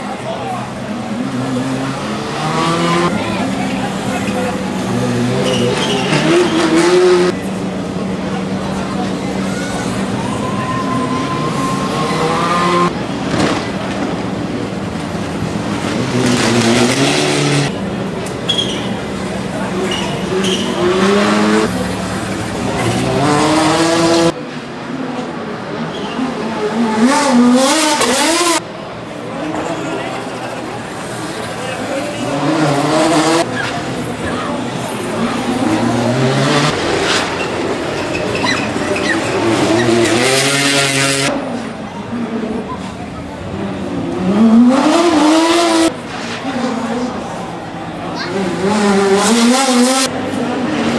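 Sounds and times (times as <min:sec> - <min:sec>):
rally car engine revving: 0:00.0 - 0:24.8, 0:25.6 - 0:41.7, 0:42.3 - 0:50.9
road and tyre noise: 0:00.0 - 0:50.9.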